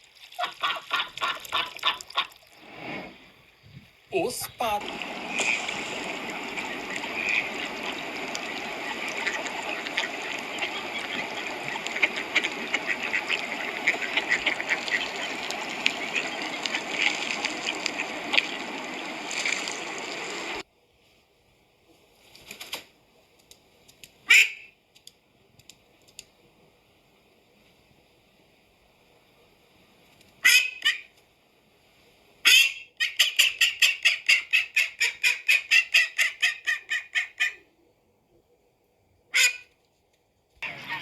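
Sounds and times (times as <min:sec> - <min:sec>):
ducks quacking: 0:00.4 - 0:02.3, 0:05.0 - 0:20.6, 0:40.6 - 0:41.0
steady background noise: 0:02.8 - 0:20.9
loud single duck call: 0:30.4 - 0:31.0, 0:39.3 - 0:39.7.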